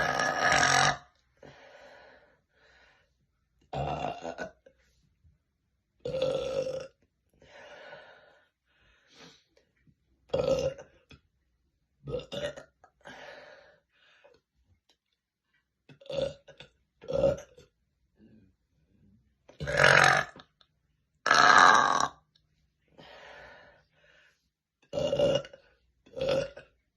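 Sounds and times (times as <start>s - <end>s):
woman burping: 0.0s - 1.1s, 3.7s - 4.7s, 19.6s - 20.4s, 21.3s - 22.1s, 24.9s - 26.7s.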